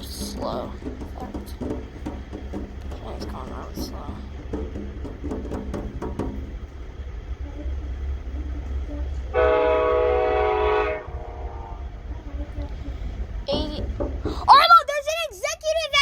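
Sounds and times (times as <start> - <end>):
freight train rumble: 0.0 - 16.0
locomotive air horn blast: 9.3 - 12.1.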